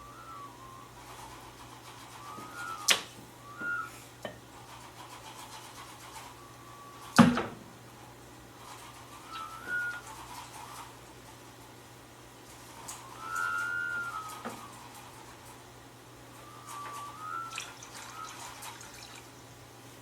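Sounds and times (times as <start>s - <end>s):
squeaky whistle-like notes: 0.0s - 1.0s, 1.9s - 4.0s, 6.3s - 7.2s, 9.2s - 10.8s, 12.8s - 14.9s, 16.4s - 18.7s.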